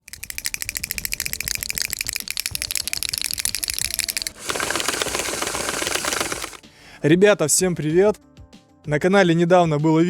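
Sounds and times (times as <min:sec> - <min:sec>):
fast ticking engine knock: 0:00.1 - 0:06.6.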